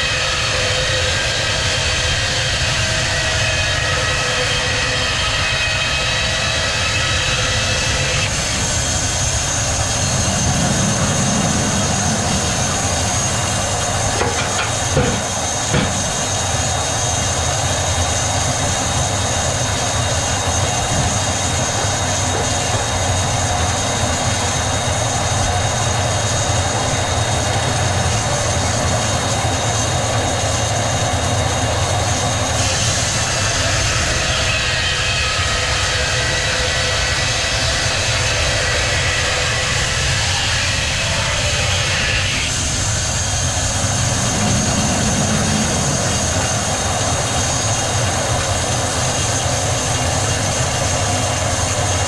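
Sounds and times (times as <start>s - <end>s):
high steady whine: 0.0s - 52.0s
sawmill machinery running: 0.0s - 52.0s
sharp knocks: 14.1s - 16.4s.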